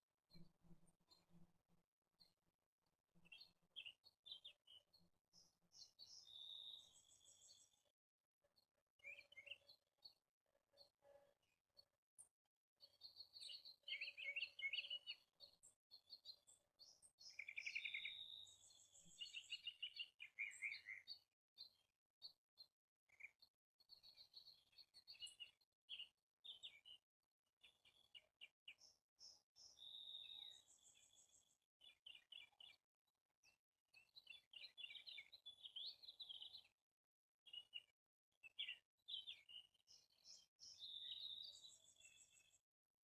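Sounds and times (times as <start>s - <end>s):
songbirds chirping and singing: 3.2s - 7.9s, 12.8s - 22.4s, 23.2s - 27.0s, 27.6s - 32.8s, 33.4s - 36.7s, 37.5s - 42.6s.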